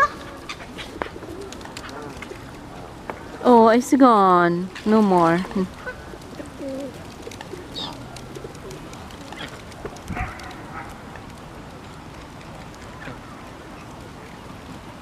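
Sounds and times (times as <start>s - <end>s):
outdoor background noise: 0.0s - 15.0s
birds calling: 4.7s - 11.2s.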